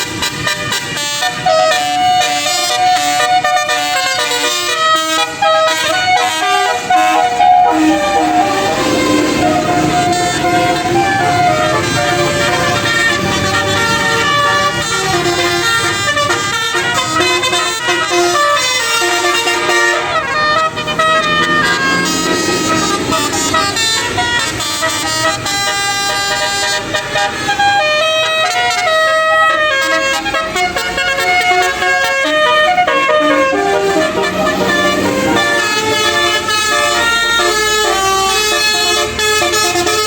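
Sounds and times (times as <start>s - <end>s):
bus horns playing melodic tunes: 0.0s - 40.0s
low engine rumble: 5.8s - 16.3s, 16.9s - 25.4s, 32.4s - 39.1s.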